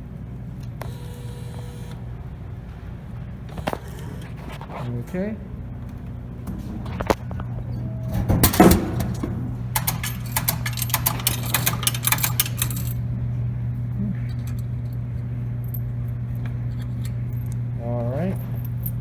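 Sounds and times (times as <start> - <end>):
steady low hum: 0.0 - 19.0
coins clinking and jingling: 9.8 - 13.0, 18.3 - 19.0.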